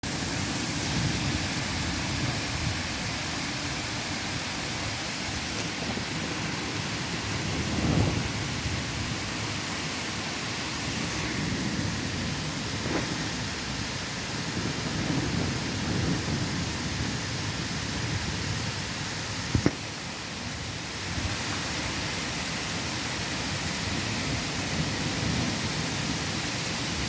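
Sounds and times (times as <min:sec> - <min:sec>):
rain falling: 0:00.0 - 0:27.0
thunder rumbling: 0:05.7 - 0:09.8, 0:10.8 - 0:19.8.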